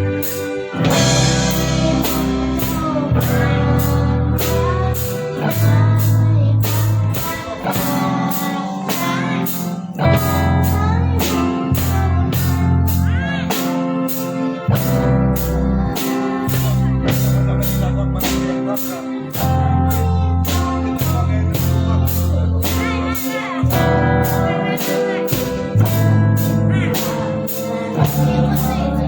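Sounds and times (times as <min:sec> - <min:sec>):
band playing a song: 0:00.0 - 0:29.0
drum strokes: 0:00.0 - 0:29.0
cymbal crash: 0:00.3 - 0:11.5.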